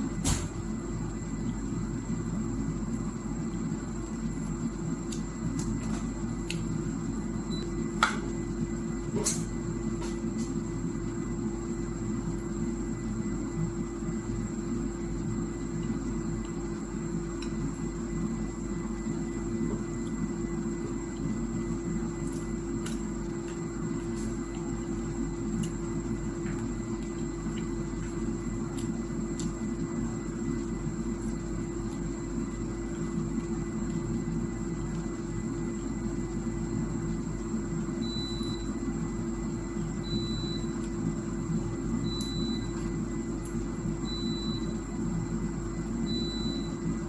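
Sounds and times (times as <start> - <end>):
low hum and rumble: 0.0 - 47.0
eating clicks and smacks: 26.5 - 29.6.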